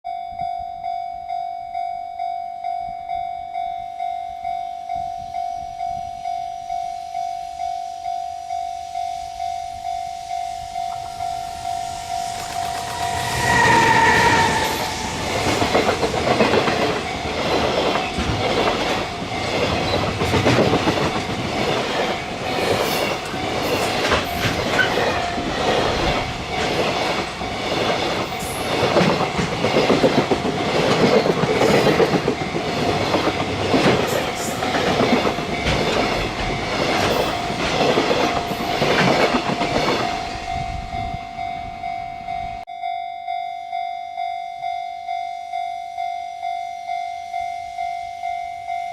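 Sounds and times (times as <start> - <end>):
level crossing alarm ringing: 0.1 - 48.9
train wagons clattering over rails: 11.0 - 41.1
locomotive horn: 12.8 - 15.9.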